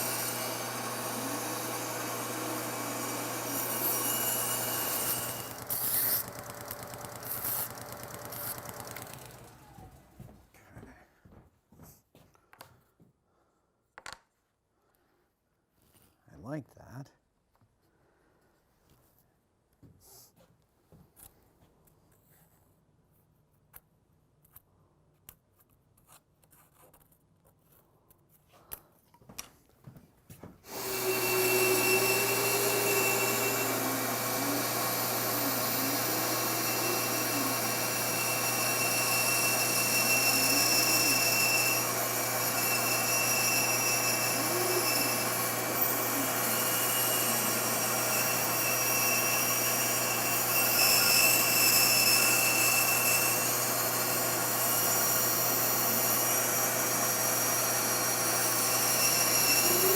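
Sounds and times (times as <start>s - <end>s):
power tool running: 0.0s - 10.2s, 30.7s - 59.9s.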